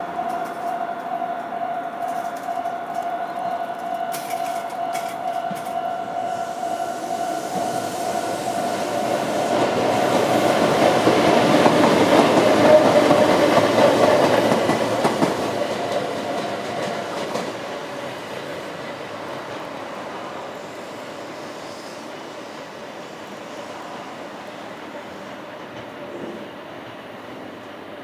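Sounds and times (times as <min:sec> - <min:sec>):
level crossing warning bell: 0:00.0 - 0:07.6
train wheels clacking over rail joints: 0:02.0 - 0:05.9, 0:09.4 - 0:19.8.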